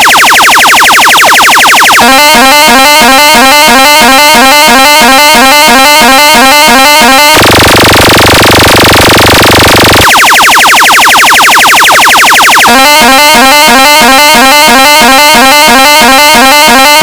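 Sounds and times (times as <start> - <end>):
synth horn stabs: 2.0 - 10.2, 12.6 - 17.0.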